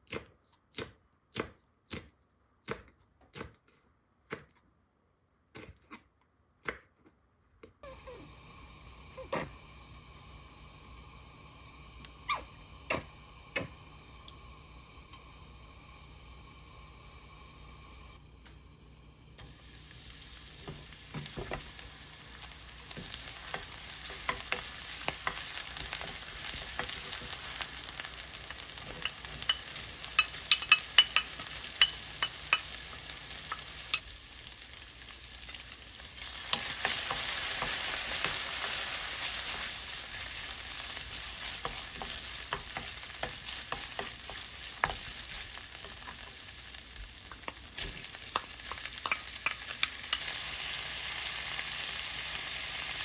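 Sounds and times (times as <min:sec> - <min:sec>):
food sizzling in a frying pan: 0:19.4 - 0:53.0.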